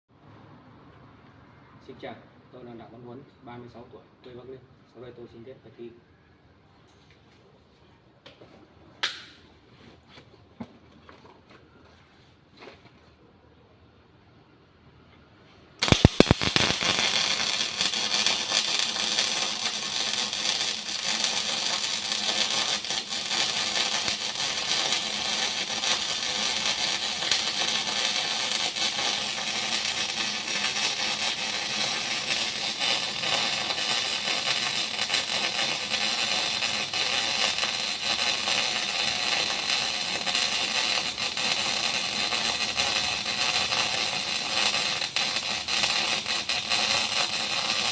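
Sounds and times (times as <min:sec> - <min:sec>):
welding arc crackling hiss: 0:15.8 - 0:47.9
welding arc sharp cracks: 0:15.8 - 0:47.9.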